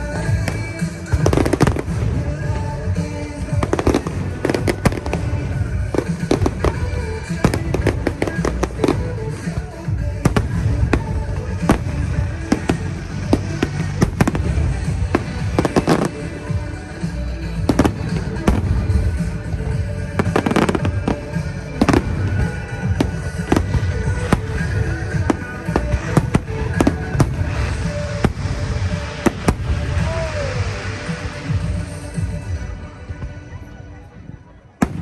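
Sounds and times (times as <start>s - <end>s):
fireworks bangs: 0.0s - 33.4s, 34.8s - 35.0s
music playing: 0.0s - 35.0s.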